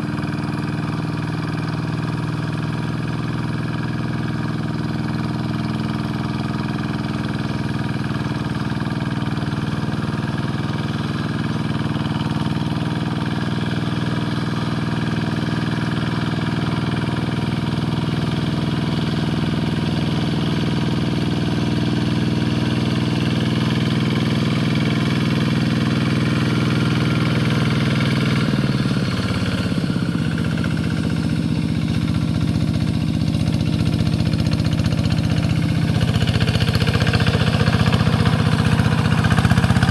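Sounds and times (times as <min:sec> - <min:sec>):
tractor engine running under load: 0:00.0 - 0:39.9.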